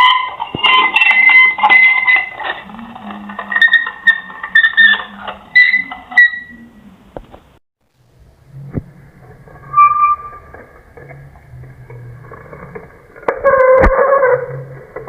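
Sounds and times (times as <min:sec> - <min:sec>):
high-pitched squeaking: 0:00.0 - 0:06.8, 0:09.6 - 0:10.6.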